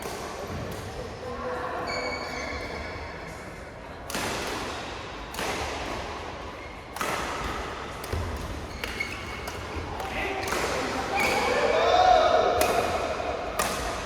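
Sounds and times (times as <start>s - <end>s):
rackets hitting shuttlecock: 4.1s - 14.0s.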